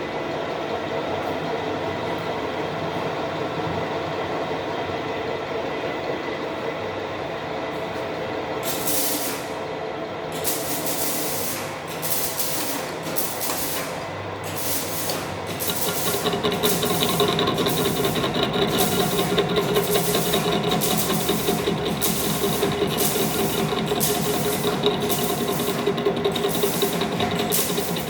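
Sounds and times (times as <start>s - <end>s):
metal lathe humming: 15.4s - 28.0s.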